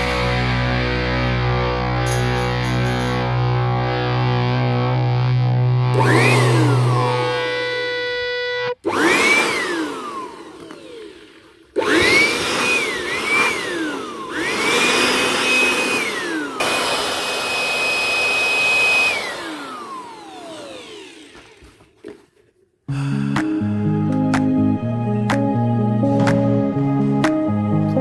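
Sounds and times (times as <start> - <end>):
blower motor whine: 0.0 - 21.8.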